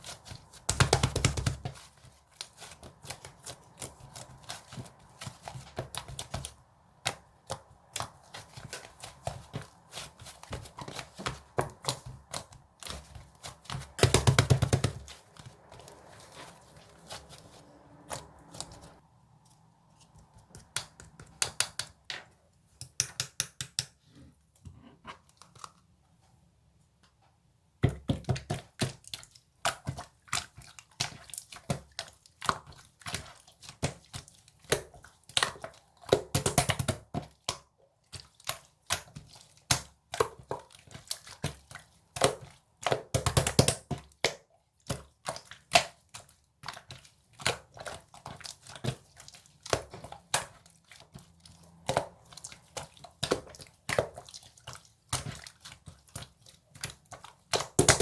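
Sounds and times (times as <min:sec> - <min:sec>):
crinkling and crunching: 0:14.7 - 0:20.2.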